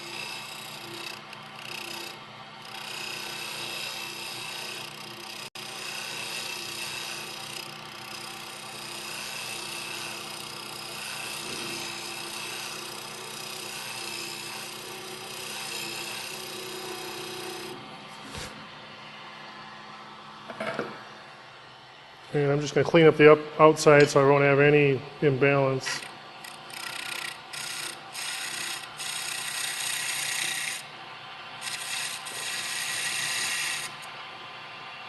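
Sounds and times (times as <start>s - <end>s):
lathe tool scraping wood: 0.0s - 18.6s, 25.8s - 30.9s, 31.6s - 34.1s
lathe motor hum: 0.0s - 22.1s, 25.3s - 34.9s.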